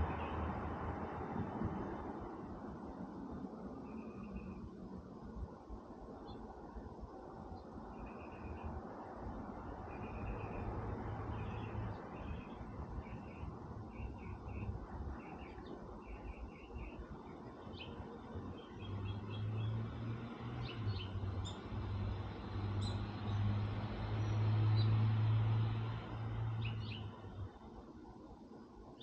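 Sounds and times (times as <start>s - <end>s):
small birds chirping: 9.7s - 27.5s.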